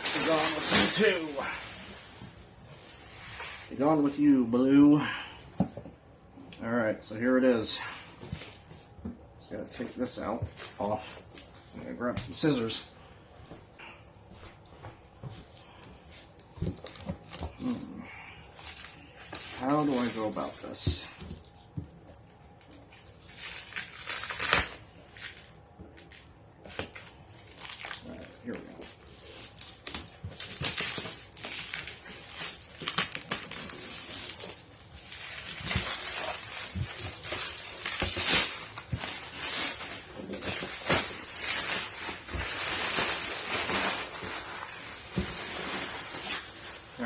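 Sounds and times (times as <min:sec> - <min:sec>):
packaging rustling and crinkling: 0:00.0 - 0:05.0, 0:14.5 - 0:47.0.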